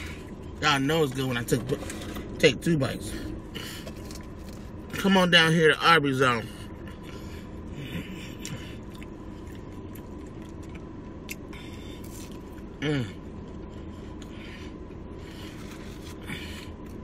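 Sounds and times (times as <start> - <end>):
person chewing food: 6.6 - 17.0.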